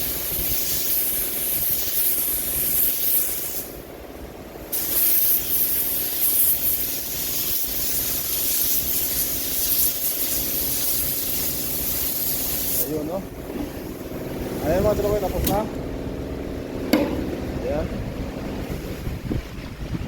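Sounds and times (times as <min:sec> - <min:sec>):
air spray gun hissing: 0:00.0 - 0:03.8, 0:04.7 - 0:15.7
steady hum: 0:00.0 - 0:20.0.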